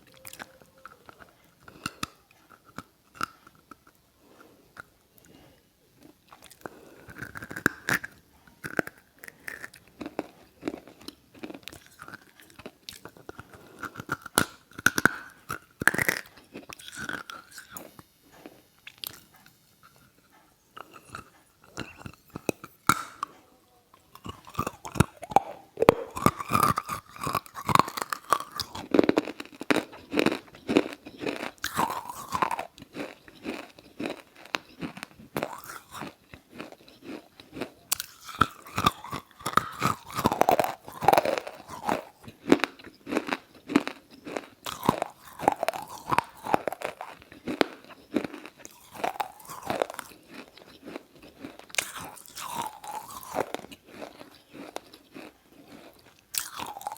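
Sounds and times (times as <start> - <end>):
wet chewing: 0.0 - 23.4, 24.0 - 56.9
sharp crunches of biting clay: 20.8 - 23.3, 24.2 - 36.2.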